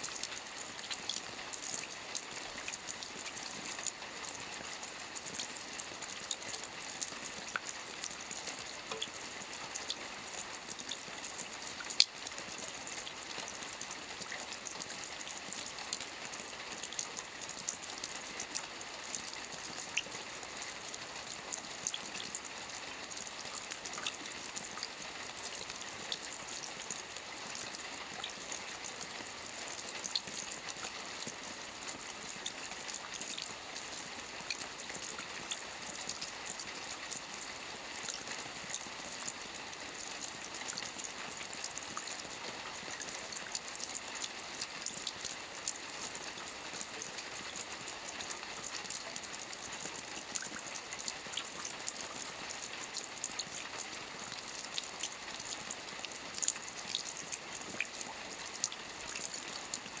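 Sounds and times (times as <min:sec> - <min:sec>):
rain drops tapping: 0:00.2 - 0:20.0.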